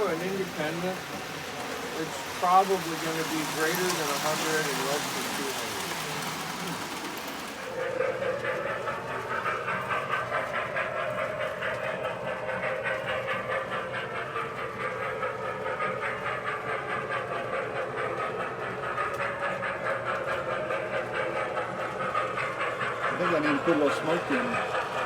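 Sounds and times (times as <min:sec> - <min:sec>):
toy train motor whirring: 0:00.0 - 0:25.0
wheels rattling over rails: 0:00.0 - 0:25.0.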